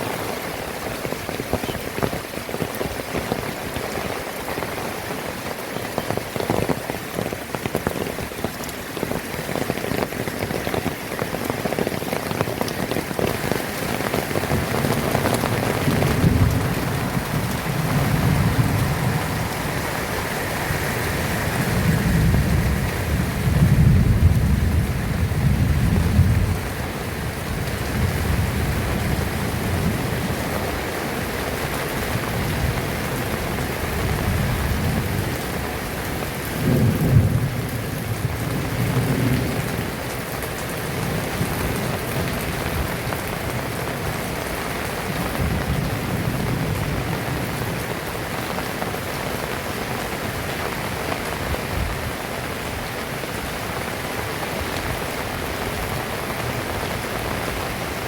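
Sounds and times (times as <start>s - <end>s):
heavy rain falling: 0.0s - 58.0s
rumbles of thunder: 14.2s - 20.3s, 21.1s - 30.4s, 36.2s - 40.0s.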